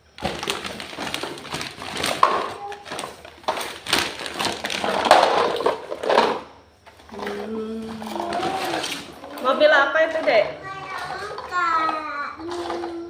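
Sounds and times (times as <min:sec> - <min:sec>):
packaging crinkling and tearing: 0:00.2 - 0:05.7.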